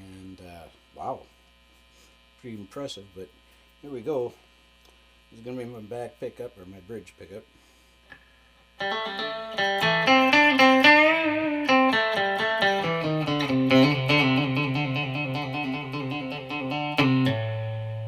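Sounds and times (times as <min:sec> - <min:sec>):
electric guitar lick through amp: 0:08.8 - 0:18.0.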